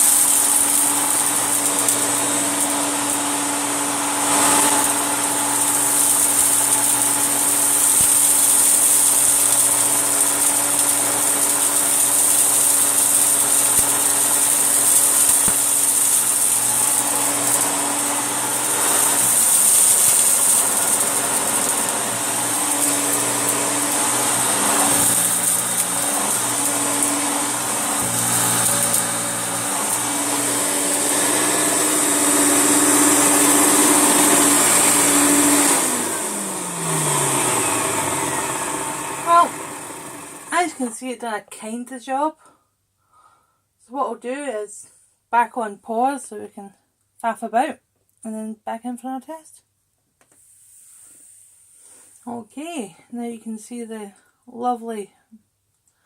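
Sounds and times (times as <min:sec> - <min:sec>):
vacuum cleaner running: 0:00.0 - 0:41.0.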